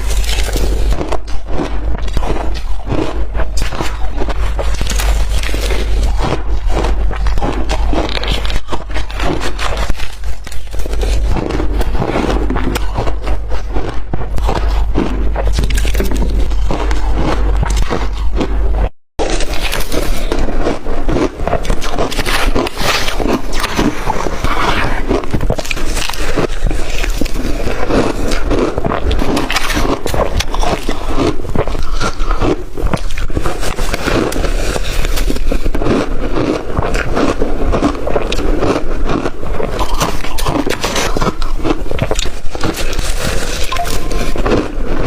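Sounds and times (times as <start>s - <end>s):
crushed ice being chewed: 0.0s - 45.0s.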